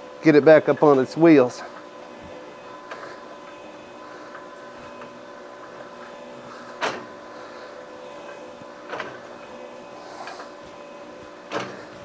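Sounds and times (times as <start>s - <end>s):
steady hum: 0.0s - 12.0s.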